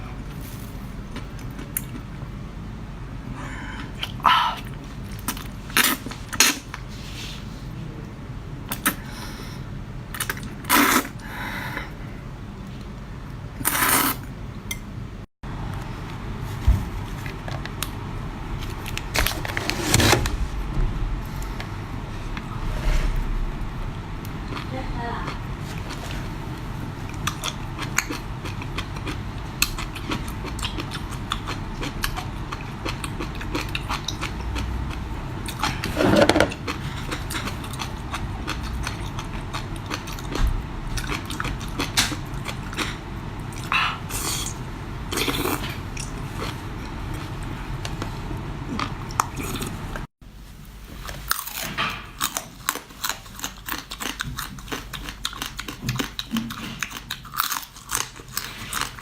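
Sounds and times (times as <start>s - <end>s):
person chewing crunchy food: 25.3s - 48.0s, 48.7s - 50.1s, 51.0s - 59.0s.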